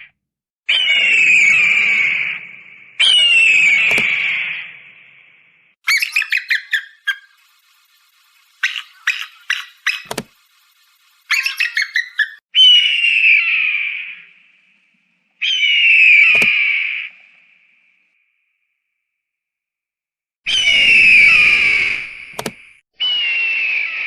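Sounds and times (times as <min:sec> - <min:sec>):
eagle screams: 0:00.7 - 0:04.9, 0:11.3 - 0:14.3, 0:15.4 - 0:17.1, 0:20.5 - 0:22.2, 0:23.0 - 0:24.0
eagle chittering: 0:05.9 - 0:12.4.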